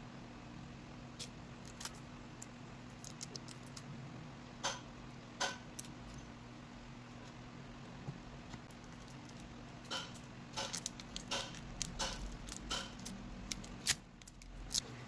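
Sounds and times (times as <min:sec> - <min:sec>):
steady low hum: 0:00.0 - 0:15.0
small tools clicking and tapping: 0:08.7 - 0:14.8.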